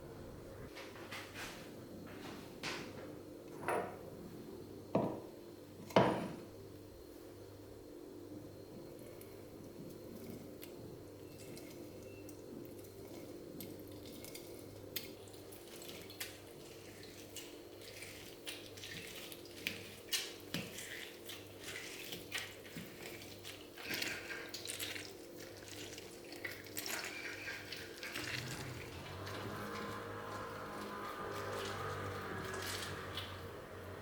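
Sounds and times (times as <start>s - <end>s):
low appliance hum: 0.0s - 34.0s
dishes clinking: 3.6s - 4.0s
water splashing at sink: 13.6s - 34.0s.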